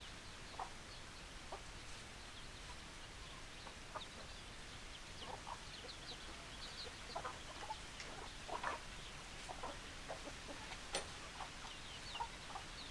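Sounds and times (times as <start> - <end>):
hens clucking: 5.2 - 12.8.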